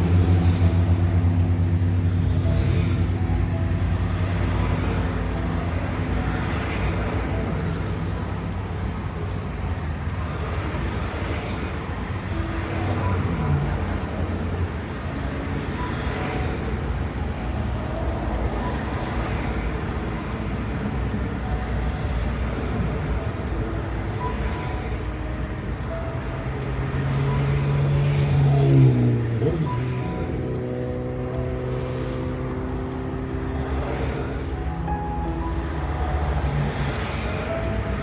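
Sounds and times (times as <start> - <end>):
highway traffic: 0.0 - 38.0
low engine drone: 0.0 - 38.0.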